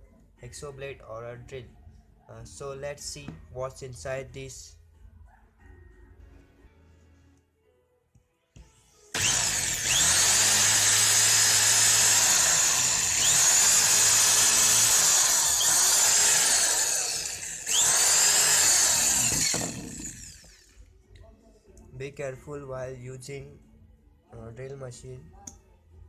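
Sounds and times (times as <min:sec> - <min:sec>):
electric drill drilling into plastic: 0:09.2 - 0:20.7.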